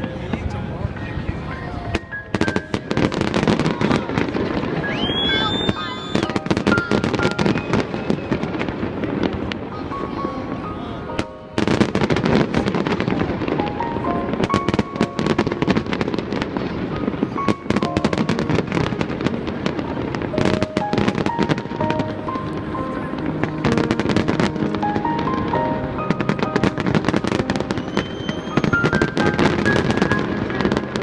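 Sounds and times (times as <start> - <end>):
fireworks banging and crackling: 0.0 - 31.0
music with held notes: 6.2 - 31.0.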